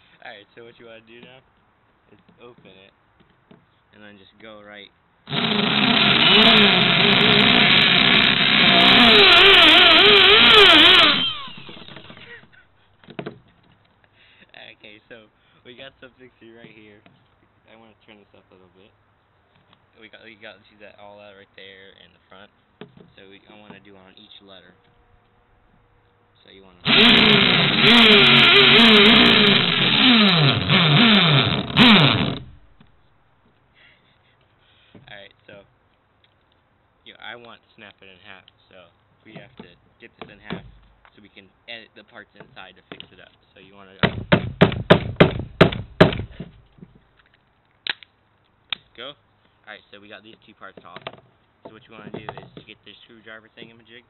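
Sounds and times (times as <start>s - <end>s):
power tool drilling into phone: 5.3s - 12.4s, 26.8s - 32.7s.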